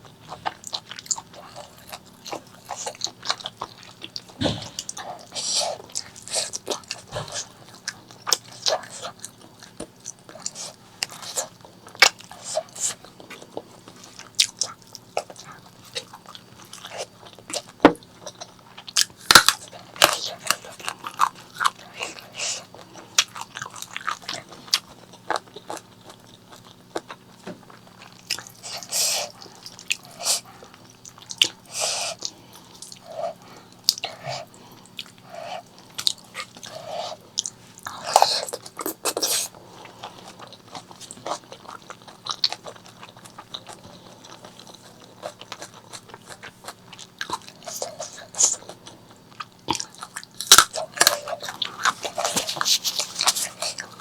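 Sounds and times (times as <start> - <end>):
chewing and biting food: 0.0 - 54.0.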